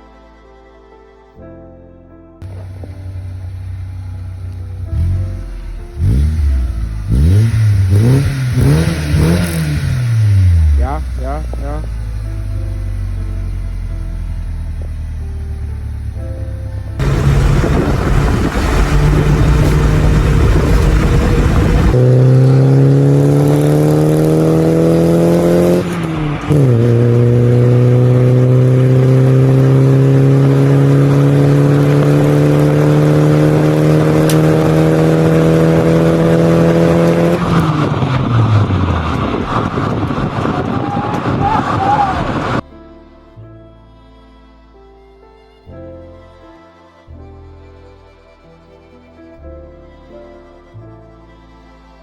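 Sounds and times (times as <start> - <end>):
car engine accelerating: 2.4 - 42.6
loud rough rumble: 2.4 - 42.6.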